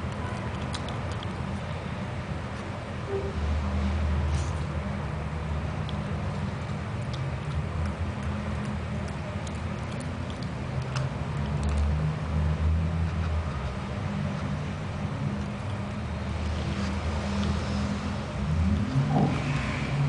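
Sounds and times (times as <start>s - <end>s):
dog chewing raw carrot: 0.0s - 1.9s, 5.6s - 16.3s.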